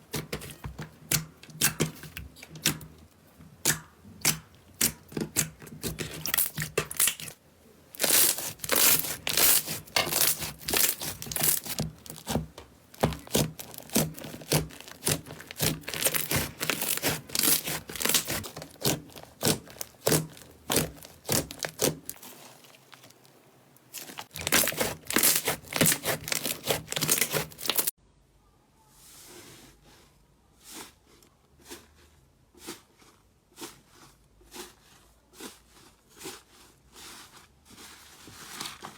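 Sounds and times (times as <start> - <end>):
slime crackling and popping: 3.6 - 7.4, 8.0 - 27.9.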